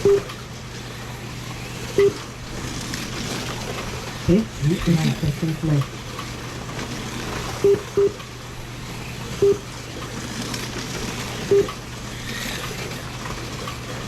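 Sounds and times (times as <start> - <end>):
short electronic beeps: 0.0 - 0.3, 2.0 - 2.2, 7.6 - 8.2, 9.4 - 9.6, 11.5 - 11.8.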